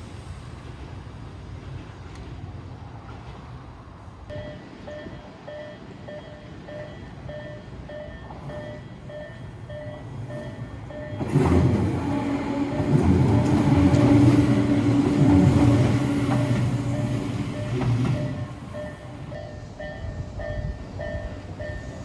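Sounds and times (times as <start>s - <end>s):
train passing: 0.0s - 22.0s
level-crossing alarm ringing: 4.3s - 11.4s, 15.6s - 22.0s.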